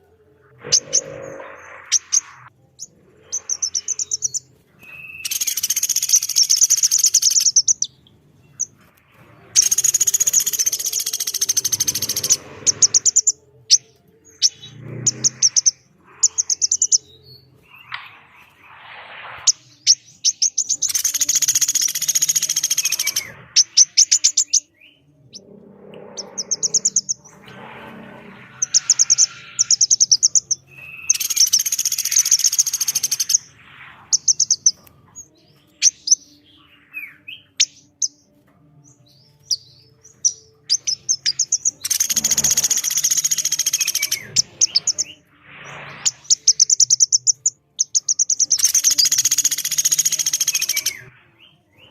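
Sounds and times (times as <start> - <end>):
scratchy bird chatter: 0.6 - 7.9, 9.5 - 13.3, 20.3 - 24.6, 26.1 - 33.5, 40.3 - 45.1, 46.0 - 51.0
woodpecker rattling calls: 41.3 - 44.2.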